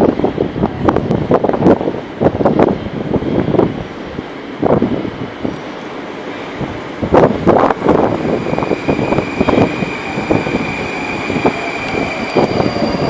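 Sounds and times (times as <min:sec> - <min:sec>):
train rumbling on rails: 0:00.0 - 0:13.0
steady high whine: 0:05.5 - 0:13.0.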